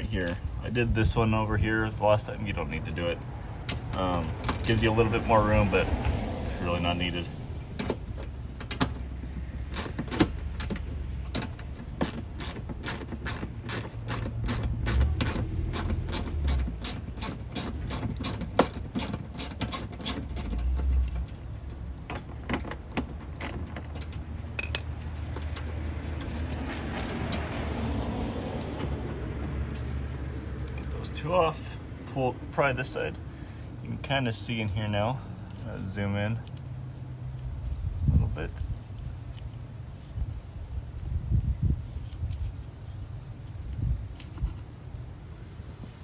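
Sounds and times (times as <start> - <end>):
ratchet clicking: 12.0 - 20.5.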